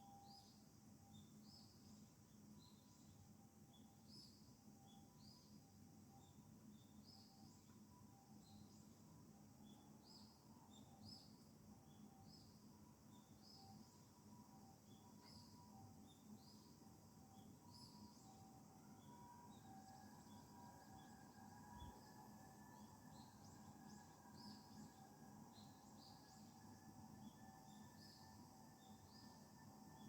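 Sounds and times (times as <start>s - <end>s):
distant two-tone ambulance siren: 18.1s - 25.5s.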